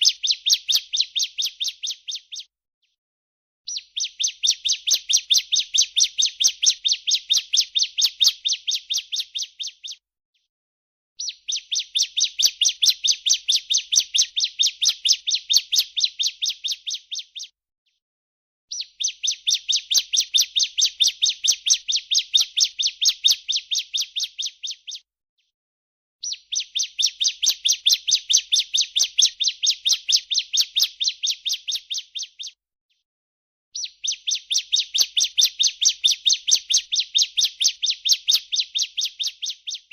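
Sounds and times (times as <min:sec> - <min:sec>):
bird trilling call: 0:26.2 - 0:32.6, 0:33.8 - 0:39.9.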